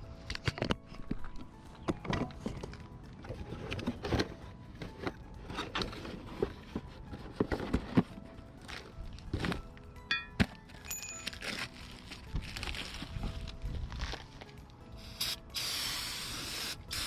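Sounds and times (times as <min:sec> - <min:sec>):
hand tools and brake parts clanking: 0:00.4 - 0:12.0.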